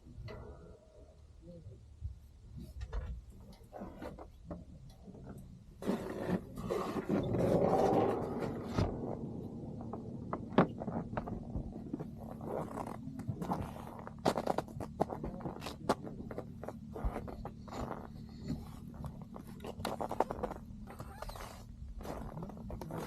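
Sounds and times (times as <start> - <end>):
low hum: 0.0 - 23.0
objects knocking and scraping: 2.6 - 20.6.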